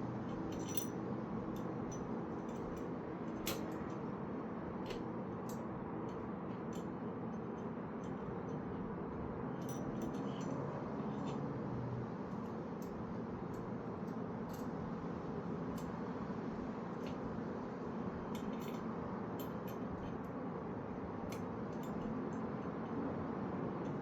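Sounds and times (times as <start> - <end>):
steady background hum: 0.0 - 24.0
metal clicks of bicycle parts: 3.4 - 4.0.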